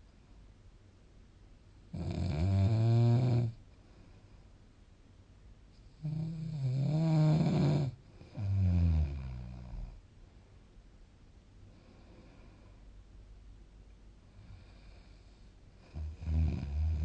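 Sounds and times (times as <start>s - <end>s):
person snoring: 1.9s - 3.6s, 6.0s - 10.0s, 15.9s - 17.0s.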